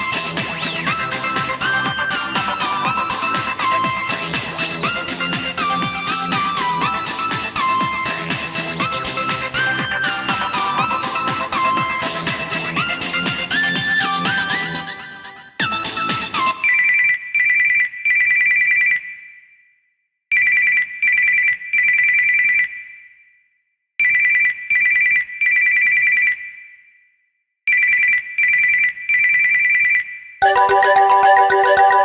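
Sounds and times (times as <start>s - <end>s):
melodic ringtone: 0.0s - 16.8s, 30.4s - 32.0s
trilling telephone bell ringtone: 30.4s - 32.0s.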